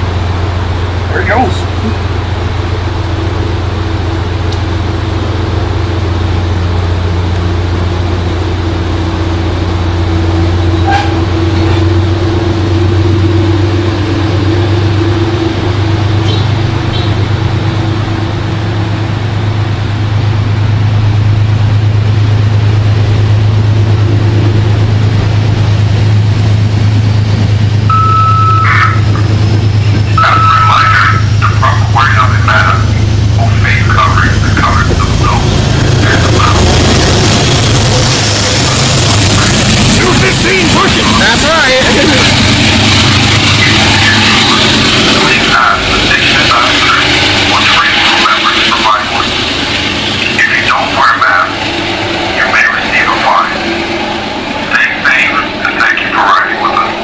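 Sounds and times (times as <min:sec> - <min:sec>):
train rumble: 0:00.0 - 0:57.0
short high tones: 0:27.9 - 0:28.8.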